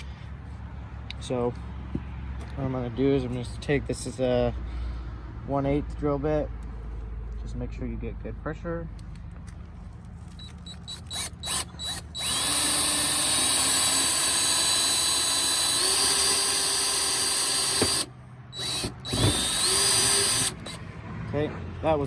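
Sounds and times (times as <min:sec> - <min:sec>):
drill trigger blips: 0:10.4 - 0:20.8
electric drill whining: 0:10.4 - 0:20.9.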